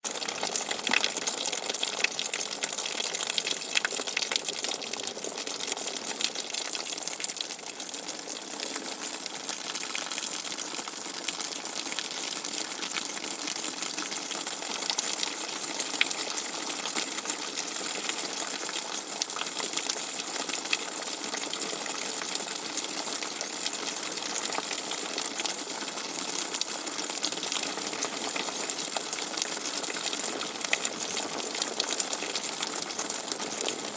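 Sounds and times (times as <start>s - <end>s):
constant watery hiss: 0.0s - 33.9s
rainwater dripping: 0.1s - 7.7s.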